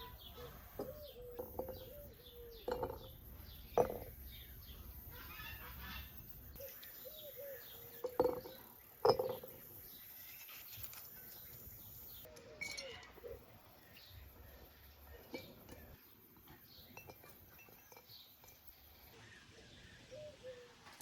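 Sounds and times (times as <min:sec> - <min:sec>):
birds honking: 0:00.0 - 0:08.5
faint bird chirping: 0:00.0 - 0:21.0.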